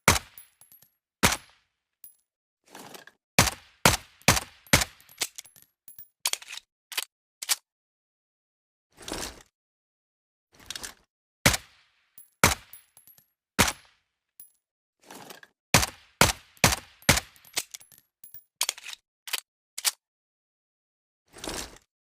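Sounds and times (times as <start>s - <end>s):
light metallic clinks: 5.0s - 6.1s, 17.4s - 18.5s.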